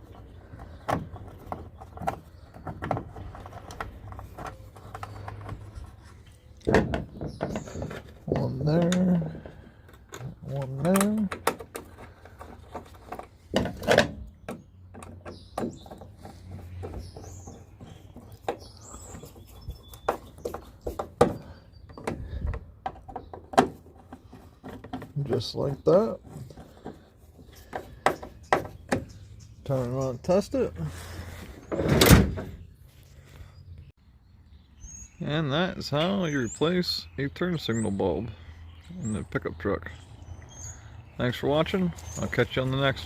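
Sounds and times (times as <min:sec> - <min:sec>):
plastic part clicks and knocks: 0:09.9 - 0:17.2.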